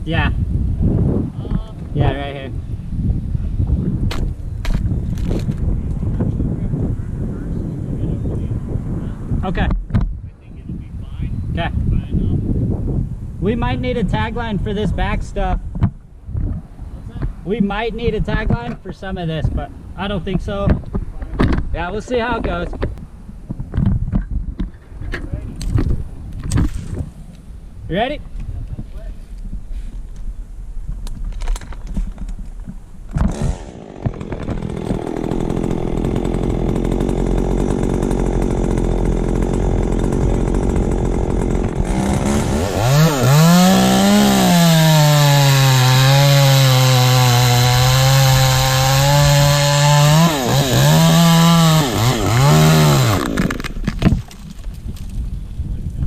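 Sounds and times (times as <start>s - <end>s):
chainsaw cutting wood: 33.1s - 55.2s.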